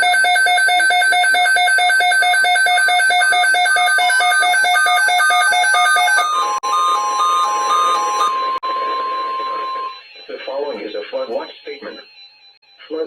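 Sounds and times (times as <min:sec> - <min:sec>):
rapid electronic alarm beeping: 0:00.0 - 0:13.0
second beeping pattern: 0:03.2 - 0:12.9.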